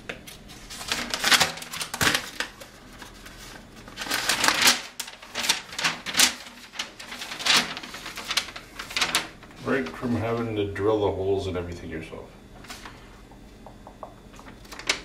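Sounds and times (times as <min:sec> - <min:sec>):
paper packaging rustling: 0:00.3 - 0:10.5, 0:14.4 - 0:15.0.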